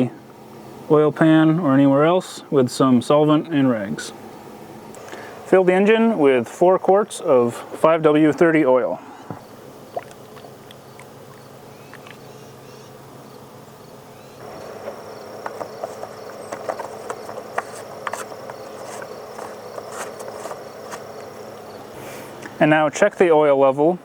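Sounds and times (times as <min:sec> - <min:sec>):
crickets chirping: 0:00.0 - 0:24.0
oil glugging from bottle: 0:09.9 - 0:12.3.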